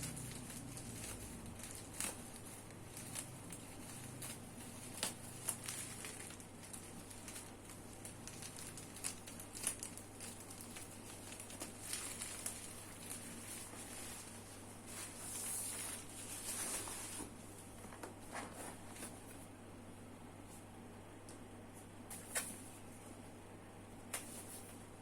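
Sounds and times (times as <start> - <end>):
packaging rustling: 0.0 - 19.3.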